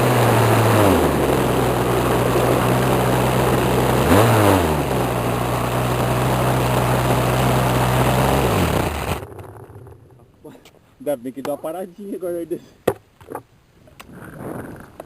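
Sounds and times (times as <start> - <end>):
model airplane engine running: 0.0 - 9.9.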